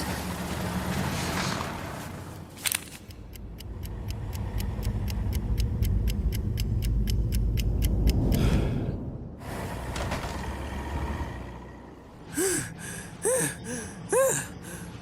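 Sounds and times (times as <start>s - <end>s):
mechanical ticking: 3.0s - 8.5s.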